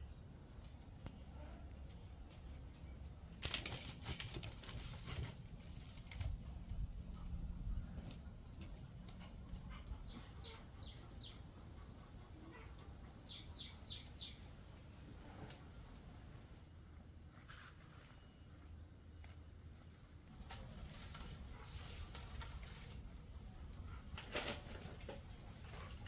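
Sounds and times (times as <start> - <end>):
rustling: 3.3 - 9.5, 17.2 - 26.0
bird chirping: 12.5 - 14.6.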